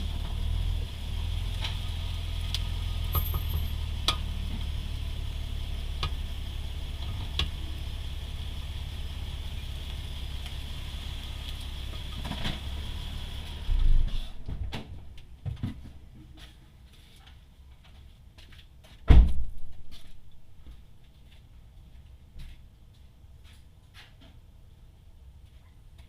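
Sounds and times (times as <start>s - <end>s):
car engine rumbling: 0.0s - 16.2s
loud thump: 19.1s - 19.6s.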